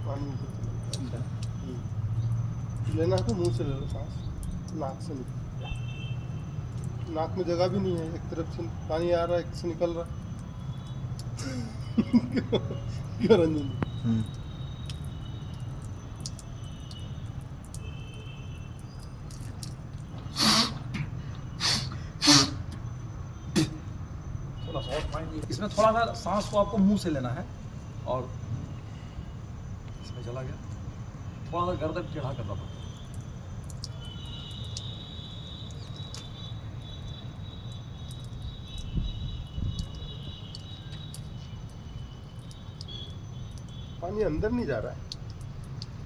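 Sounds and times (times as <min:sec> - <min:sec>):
breath puffs through nose: 0:20.3 - 0:22.8.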